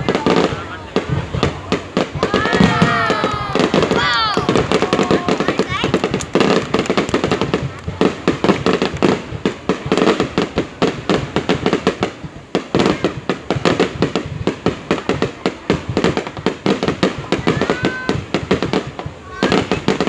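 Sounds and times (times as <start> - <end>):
firework whistling: 0.0 - 10.3
fireworks bangs and crackling: 0.0 - 20.0.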